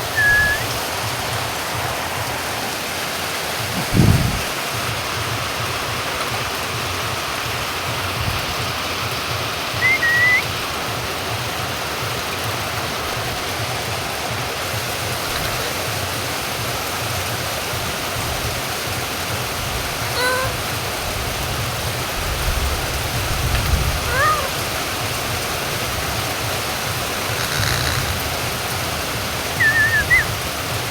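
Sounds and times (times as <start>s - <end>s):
whistled bird chirp: 0.0s - 0.9s, 9.8s - 10.5s, 24.1s - 24.5s, 29.6s - 30.4s
harsh bird call: 0.0s - 1.0s, 9.8s - 10.5s, 20.1s - 20.6s, 23.9s - 24.7s, 27.0s - 28.5s, 29.5s - 30.4s
steady rain: 0.0s - 30.9s.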